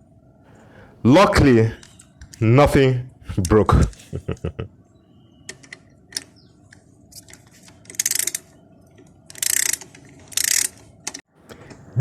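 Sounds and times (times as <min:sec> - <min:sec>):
ratchet wrench clicking: 0:10.4 - 0:10.8.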